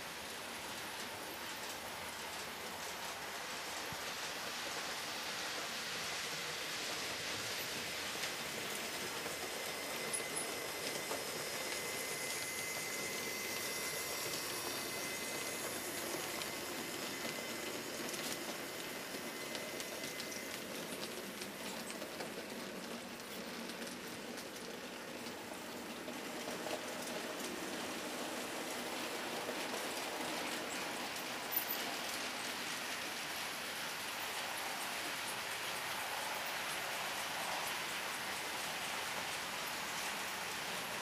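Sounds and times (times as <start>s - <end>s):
model train wheels rattling on rail: 0.0s - 41.0s
thin high tone: 8.7s - 20.6s.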